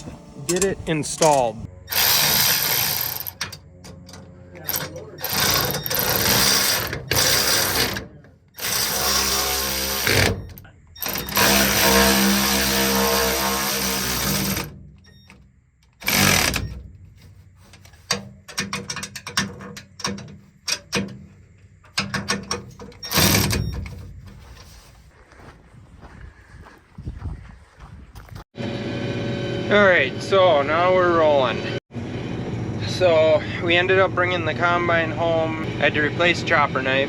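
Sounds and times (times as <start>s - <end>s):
sharp metal clicks: 0.5s - 12.4s, 18.1s - 24.0s
power tool running: 1.9s - 14.8s, 16.0s - 16.8s, 23.0s - 23.6s.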